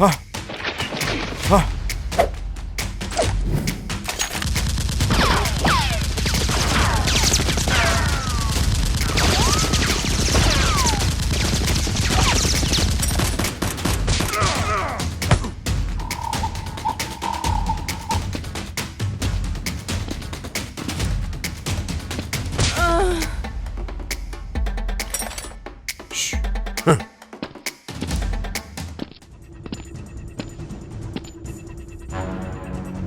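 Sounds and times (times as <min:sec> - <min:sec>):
rapid automatic gunfire: 0:04.4 - 0:14.4.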